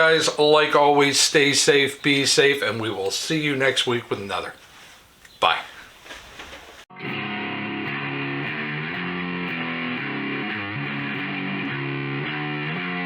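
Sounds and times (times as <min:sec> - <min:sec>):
guitar music: 0:06.9 - 0:13.0.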